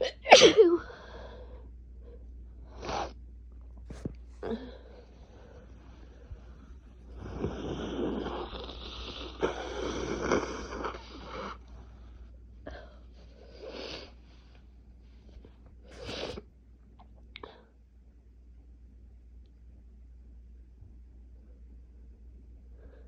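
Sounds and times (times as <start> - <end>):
nose blowing into tissue: 7.2 - 11.6, 15.9 - 16.4
sniffles: 15.9 - 16.4.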